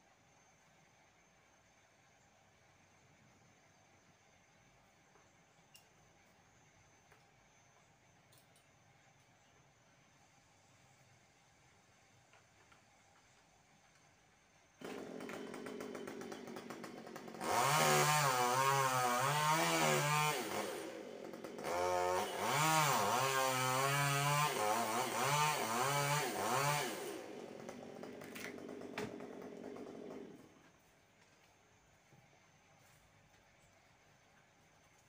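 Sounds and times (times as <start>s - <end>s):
chainsaw engine revving: 14.8s - 30.6s.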